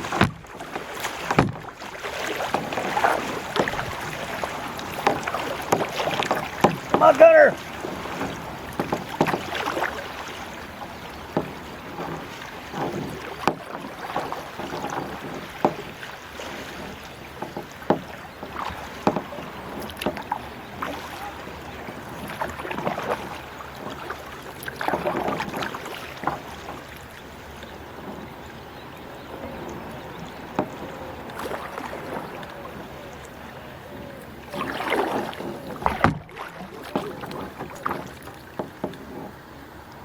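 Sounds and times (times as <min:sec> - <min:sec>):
paddle splashing water: 0:00.0 - 0:40.0
sharp knocks: 0:00.1 - 0:00.5, 0:01.2 - 0:01.6.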